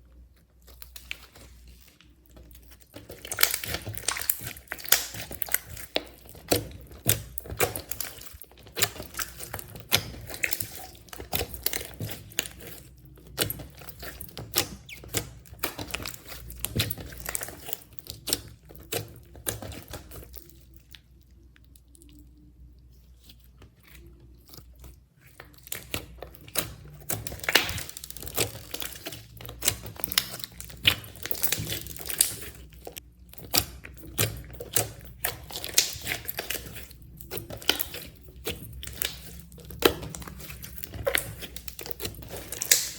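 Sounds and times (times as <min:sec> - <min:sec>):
slime being kneaded: 0:00.0 - 0:42.9
slime air pockets popping: 0:33.3 - 0:42.9.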